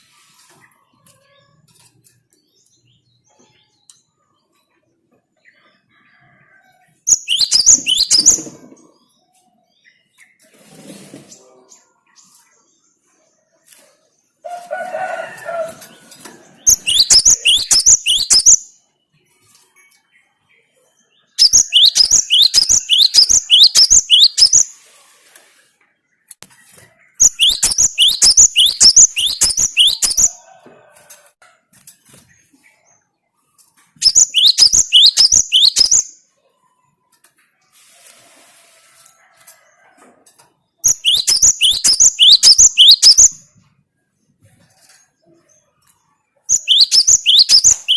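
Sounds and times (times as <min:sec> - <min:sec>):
soft low bird chatter: 0:00.0 - 0:47.9
bird singing sharp high notes: 0:07.1 - 0:08.5, 0:16.6 - 0:18.8, 0:21.4 - 0:24.7, 0:27.2 - 0:30.4, 0:34.0 - 0:36.2, 0:40.9 - 0:43.4, 0:46.5 - 0:47.9.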